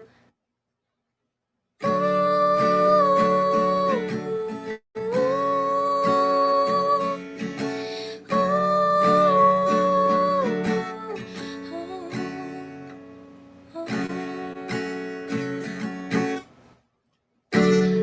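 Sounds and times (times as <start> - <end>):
acoustic guitar strumming: 1.8 - 16.5, 17.5 - 18.0.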